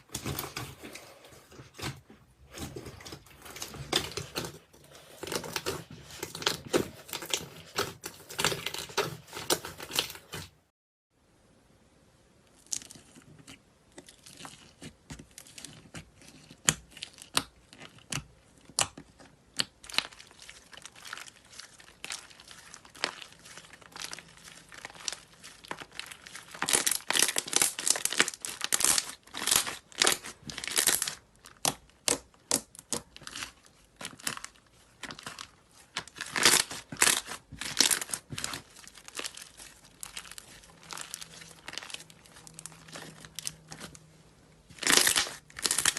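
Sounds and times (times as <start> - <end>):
slime crackling: 12.6 - 45.9.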